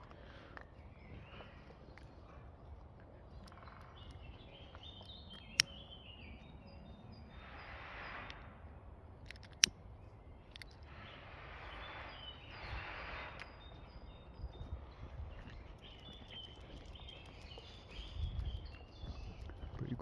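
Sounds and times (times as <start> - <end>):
outdoor background noise: 0.0 - 20.0
small birds chirping: 0.0 - 20.0
sharp click: 5.0 - 5.8.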